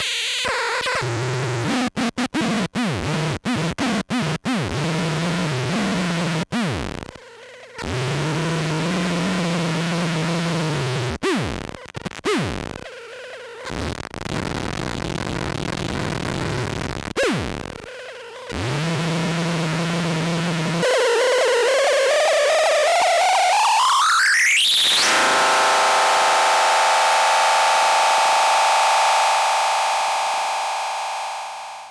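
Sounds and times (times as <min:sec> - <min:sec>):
sputtering fuzzed guitar drone: 0:24.9 - 0:31.9.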